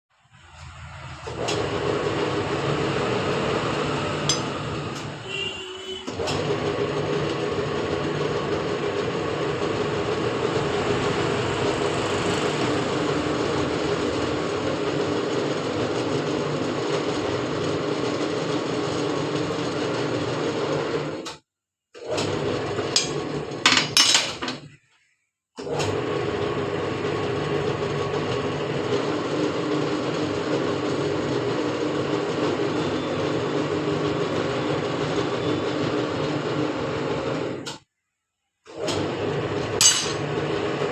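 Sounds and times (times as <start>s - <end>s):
machine motor humming: 0.7s - 5.3s.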